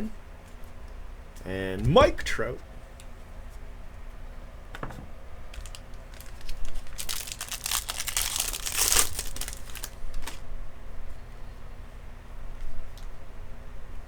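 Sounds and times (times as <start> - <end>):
foil wrapper crinkling: 5.5 - 10.5.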